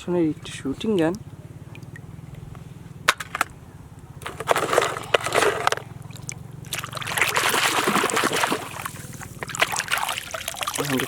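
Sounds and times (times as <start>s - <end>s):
steady low hum: 0.0s - 11.0s
water splashing and trickling: 0.4s - 2.2s, 4.3s - 11.0s.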